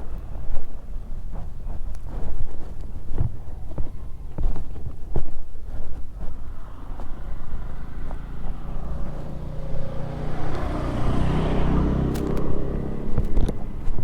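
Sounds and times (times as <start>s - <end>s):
motorcycle engine running: 5.7s - 14.0s.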